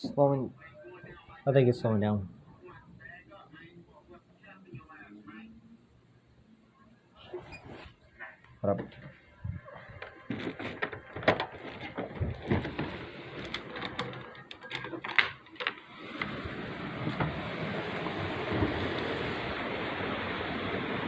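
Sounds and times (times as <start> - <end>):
heavy rain: 15.9 - 21.0.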